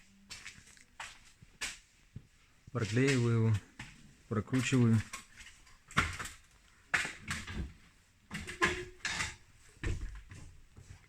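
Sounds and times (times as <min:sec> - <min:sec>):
rustling and knocking: 0:02.2 - 0:11.0.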